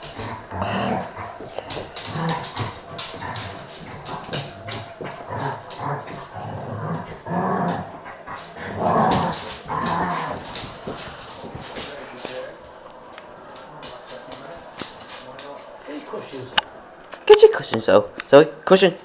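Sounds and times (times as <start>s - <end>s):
scuffling paw clicks: 0.0s - 7.1s, 7.7s - 15.8s
dogs barking: 0.0s - 15.8s
dogs growling: 0.0s - 17.3s.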